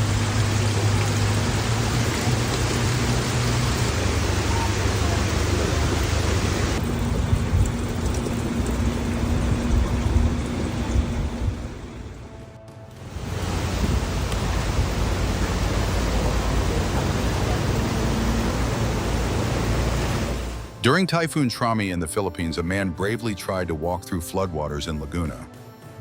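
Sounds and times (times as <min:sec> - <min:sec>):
heavy rain pouring: 0:00.0 - 0:12.4, 0:13.0 - 0:20.8
low hum: 0:00.0 - 0:20.8.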